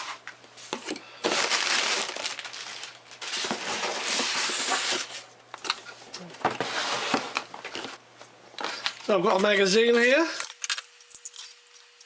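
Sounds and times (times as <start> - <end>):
packing material crinkling: 1.2 - 5.3, 10.0 - 12.0.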